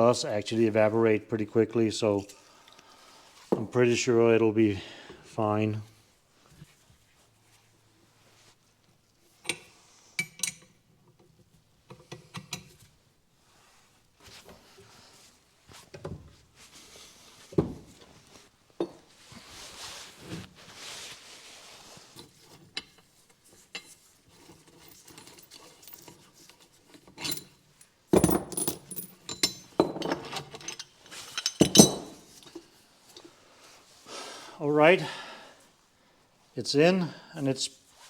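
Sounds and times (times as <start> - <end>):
metal tools clinking on bench: 24.6 - 32.6.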